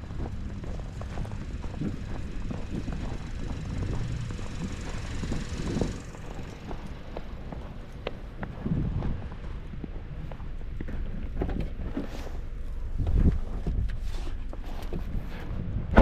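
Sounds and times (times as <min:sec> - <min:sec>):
passing vehicle engine and tyres: 0:00.0 - 0:16.0.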